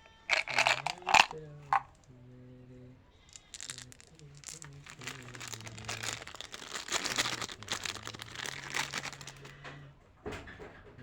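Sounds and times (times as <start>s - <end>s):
candy wrappers crinkling: 0.0s - 2.0s, 3.2s - 9.6s.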